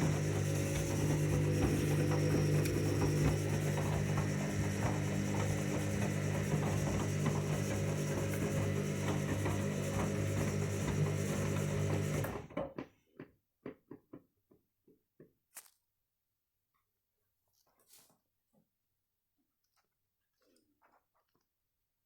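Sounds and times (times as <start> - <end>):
washing machine motor hum: 0.0 - 12.6.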